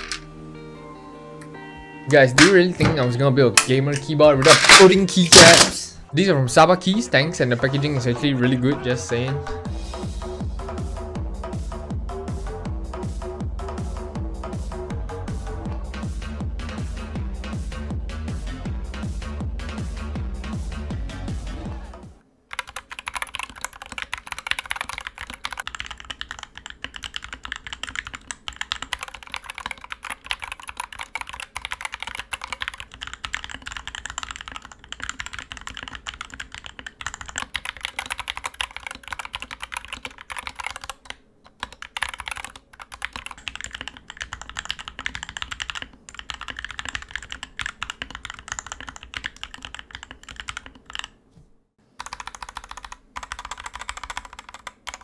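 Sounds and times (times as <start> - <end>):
mechanical keyboard typing: 22.5 - 51.2, 52.0 - 55.0.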